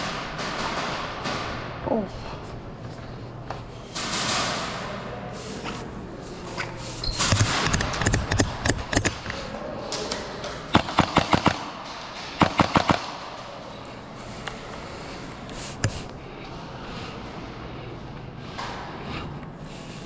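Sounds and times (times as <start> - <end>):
airsoft gunshots: 10.7 - 13.4.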